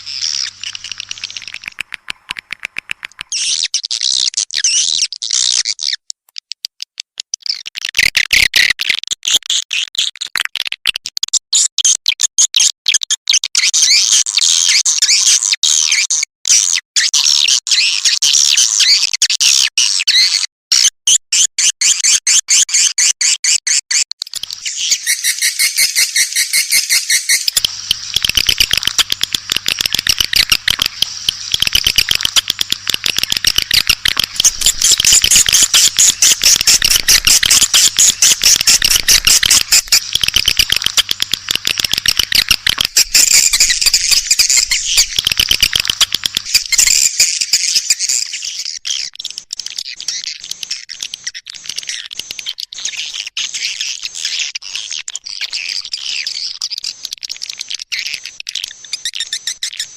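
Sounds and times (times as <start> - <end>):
swiftlets twittering: 0.0 - 3.8, 24.4 - 48.5.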